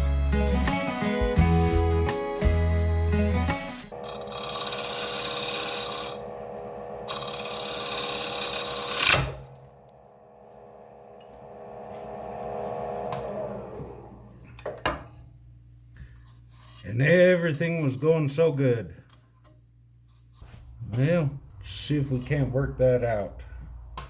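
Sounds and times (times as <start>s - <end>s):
wood lathe humming: 3.9s - 14.5s.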